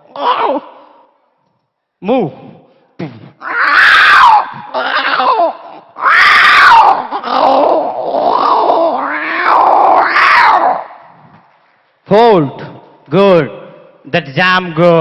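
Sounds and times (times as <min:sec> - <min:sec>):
man imitating dinosaur screeches: 0:00.0 - 0:00.9, 0:03.4 - 0:10.8.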